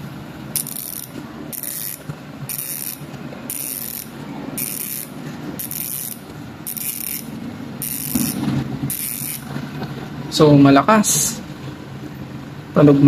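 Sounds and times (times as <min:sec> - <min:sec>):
bicycle freehub ratcheting buzz: 0:00.5 - 0:09.5.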